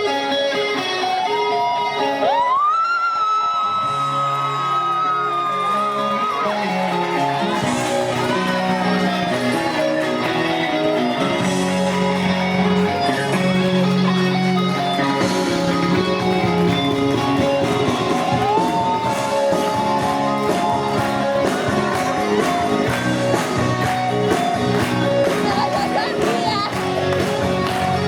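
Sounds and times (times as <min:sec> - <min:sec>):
rock music with guitar and singing: 0:00.0 - 0:28.0
people talking: 0:25.2 - 0:28.0.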